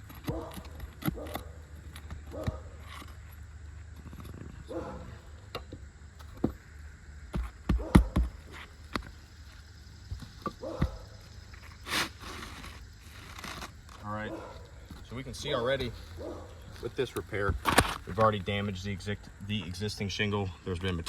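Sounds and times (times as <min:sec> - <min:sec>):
hand tools knocking on shingle: 0:07.3 - 0:09.1.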